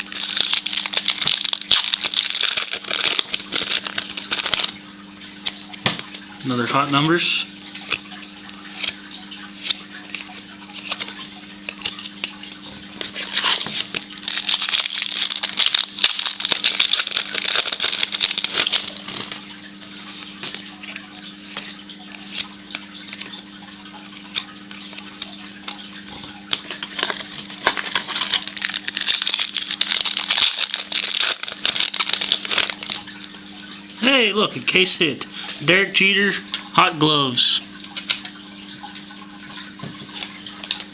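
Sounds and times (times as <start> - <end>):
card pack wrappers crinkling and tearing: 0.0 - 6.2, 9.6 - 21.1, 24.2 - 33.7.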